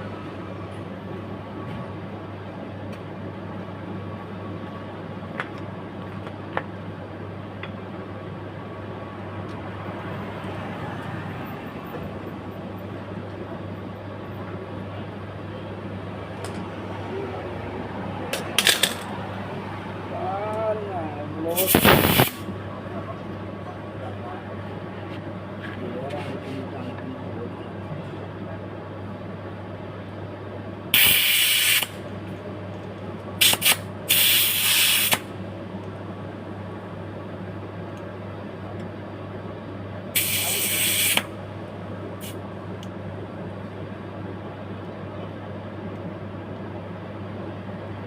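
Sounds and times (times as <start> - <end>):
low machine hum: 0.0 - 21.5
even hiss: 21.5 - 22.4, 40.2 - 41.3
compressed air hissing: 21.6 - 22.4, 31.0 - 32.0, 33.4 - 35.3, 40.2 - 41.3.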